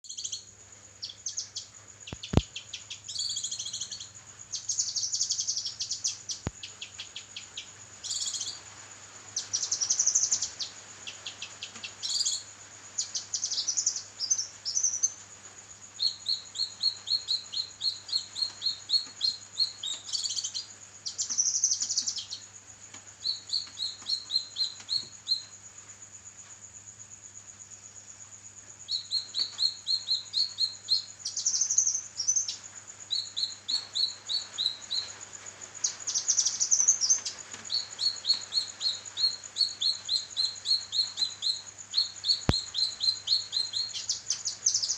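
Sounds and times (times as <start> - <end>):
songbird trilling and chattering: 0.0 - 8.6, 9.4 - 15.2, 16.0 - 22.5, 23.2 - 25.5, 35.9 - 44.9.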